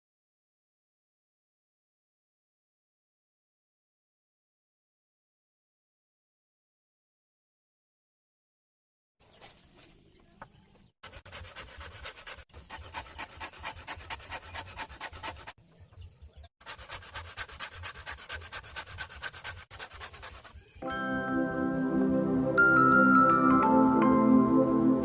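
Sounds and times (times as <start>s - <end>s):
hand tool scraping: 11.0s - 15.6s, 16.6s - 20.7s
music: 20.8s - 25.0s.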